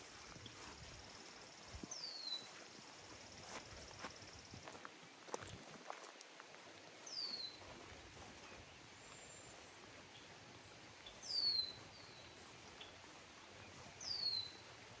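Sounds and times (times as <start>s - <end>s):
soft footsteps: 0.0s - 15.0s
songbird whistling calls: 1.9s - 2.5s, 7.1s - 7.6s, 11.0s - 13.0s, 13.7s - 14.6s.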